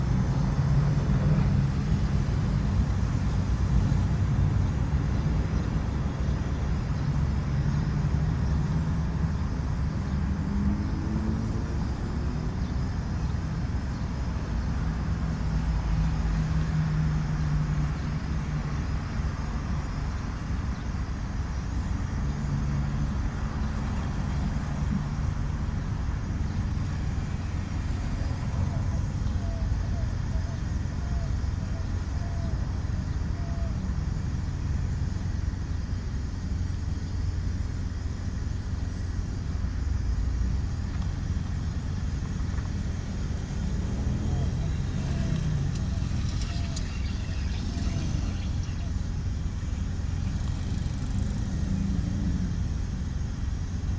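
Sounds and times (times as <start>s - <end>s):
engine speeding up: 0.0s - 13.1s, 40.4s - 53.9s
street traffic rumble: 0.0s - 53.9s.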